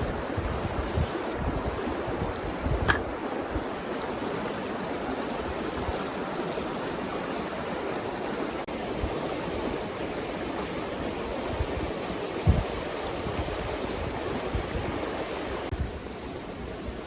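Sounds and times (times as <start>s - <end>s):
river water flowing: 0.0s - 13.2s.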